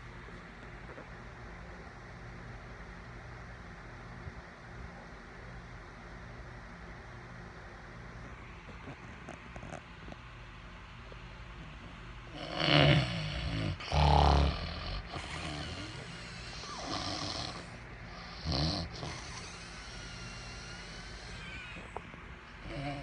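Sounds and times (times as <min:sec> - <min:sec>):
man snoring loudly: 0:12.3 - 0:21.4, 0:22.6 - 0:23.0.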